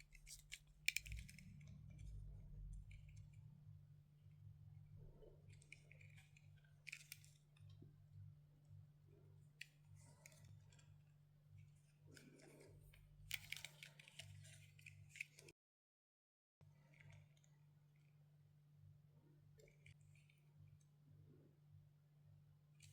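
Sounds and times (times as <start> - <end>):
handling clicks and scraping: 0.0 - 3.3, 9.6 - 15.5
steady low hum: 0.0 - 13.4.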